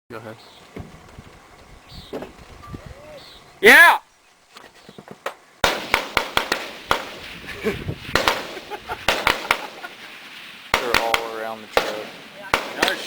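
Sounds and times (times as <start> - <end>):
rifle gunshots: 5.6 - 7.3, 8.1 - 9.8, 10.7 - 13.0.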